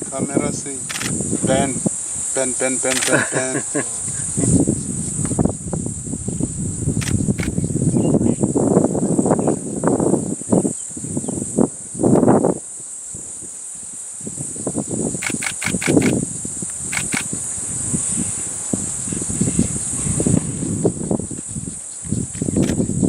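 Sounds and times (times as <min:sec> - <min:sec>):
crickets chirping: 0:00.0 - 0:23.0
camera shutter clicks: 0:00.9 - 0:01.2, 0:02.9 - 0:03.2, 0:07.0 - 0:07.6, 0:15.2 - 0:16.2, 0:16.8 - 0:17.3, 0:22.4 - 0:22.8
low muffled rumbling: 0:04.0 - 0:08.4.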